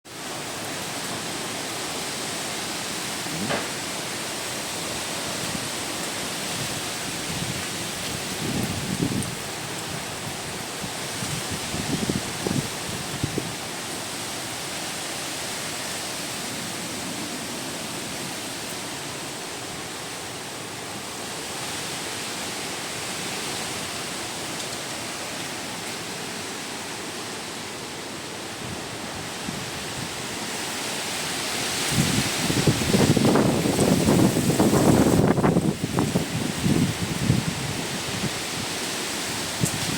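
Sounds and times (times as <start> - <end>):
wind gusts buffeting microphone: 1.3 - 13.8, 28.5 - 39.9
strong wind rushing: 31.6 - 38.8.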